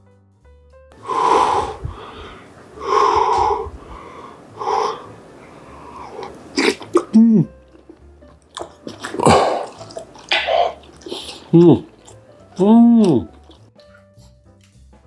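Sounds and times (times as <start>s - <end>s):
loud breathy exhalations: 1.0s - 7.5s, 9.2s - 11.9s.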